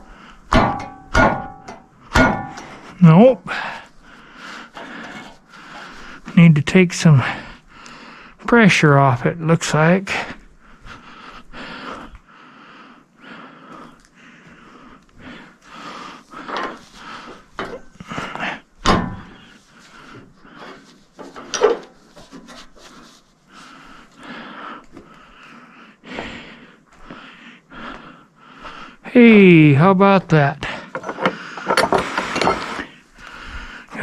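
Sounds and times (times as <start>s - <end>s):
person breathing: 0.0s - 0.5s, 2.0s - 6.4s, 7.2s - 8.5s, 10.1s - 21.6s, 22.2s - 29.1s, 30.6s - 34.0s
scrapes and knocks on log clamp: 30.9s - 32.9s.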